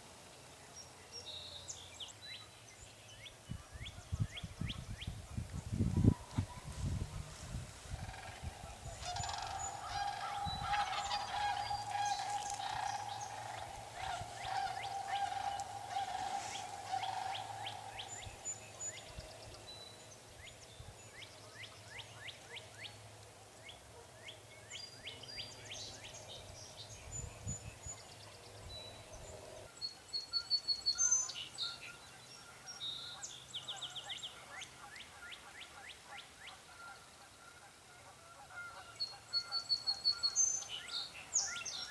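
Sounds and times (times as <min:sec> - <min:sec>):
small birds chirping and trilling: 0:06.5 - 0:19.7
wild turkey calling: 0:07.8 - 0:19.1.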